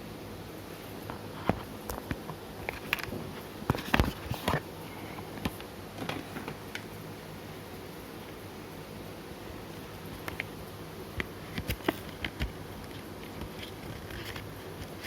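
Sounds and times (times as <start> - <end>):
steady low hum: 0.0 - 15.0
phone and packaging being handled: 11.6 - 15.0.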